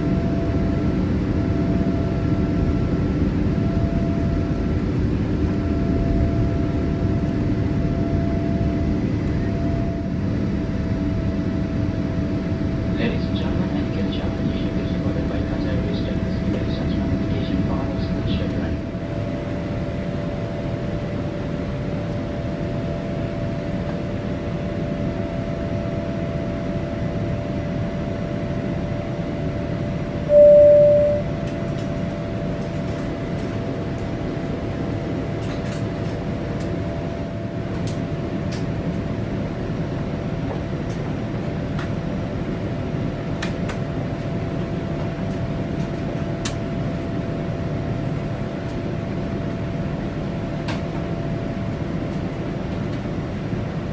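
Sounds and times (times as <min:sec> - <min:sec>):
airplane cabin hum with whine: 0:00.0 - 0:53.9
loud chime: 0:30.3 - 0:31.3.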